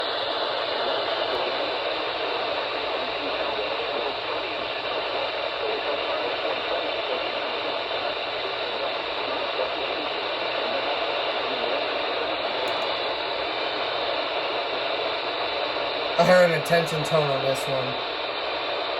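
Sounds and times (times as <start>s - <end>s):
radio static hiss: 16.2s - 18.0s.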